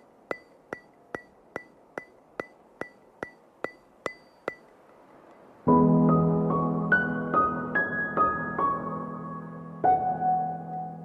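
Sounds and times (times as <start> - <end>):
sharp ringing ticks: 0.0 - 5.4
soft ambient music: 5.2 - 11.0.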